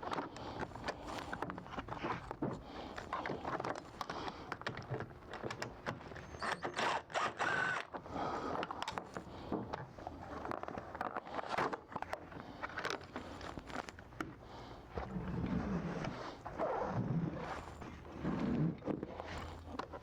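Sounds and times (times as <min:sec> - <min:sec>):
brief squeak: 0:06.2 - 0:07.0.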